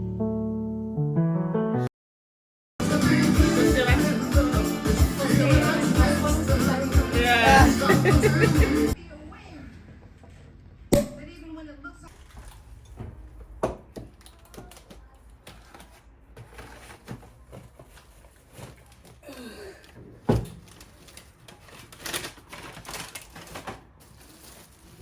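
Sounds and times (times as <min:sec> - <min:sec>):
clicks and knocks of handling: 0:13.6 - 0:19.2
rustling: 0:15.4 - 0:19.2, 0:20.5 - 0:25.0.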